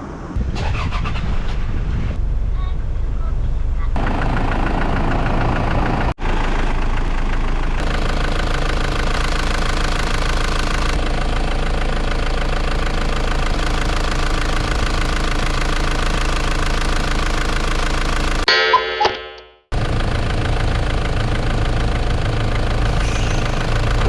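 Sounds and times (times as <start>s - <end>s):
engine idling: 3.2s - 18.5s, 19.7s - 24.0s.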